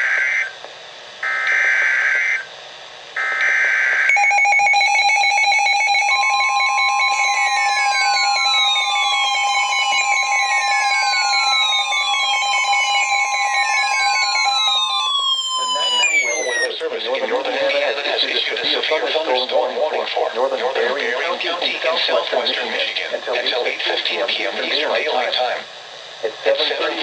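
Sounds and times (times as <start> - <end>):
steady electronic alert tone: 4.1 - 16.7
rasping digital data tones: 4.1 - 16.8
falling pitch sweeps: 5.4 - 16.7.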